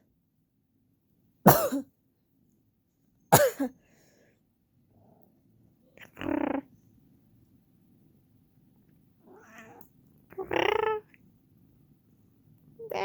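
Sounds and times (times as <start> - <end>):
cat meowing: 9.2 - 11.2, 12.8 - 13.0.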